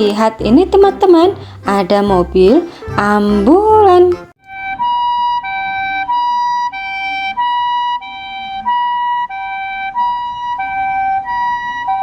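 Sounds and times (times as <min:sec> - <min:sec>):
two-tone ambulance siren: 0:04.4 - 0:12.0.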